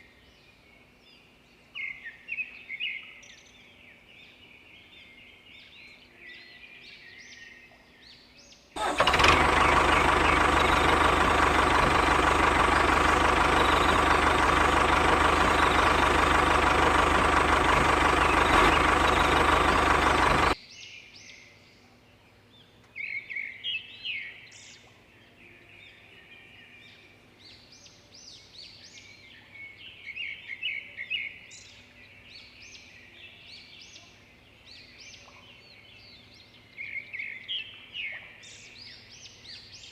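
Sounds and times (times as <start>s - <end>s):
birds chirping: 8.8s - 20.6s
small motor running: 8.8s - 20.6s.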